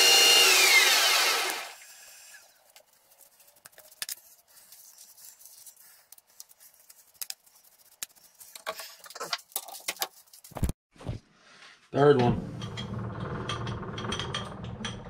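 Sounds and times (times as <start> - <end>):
tools and parts clicking and rattling: 8.5 - 10.5, 12.6 - 15.0.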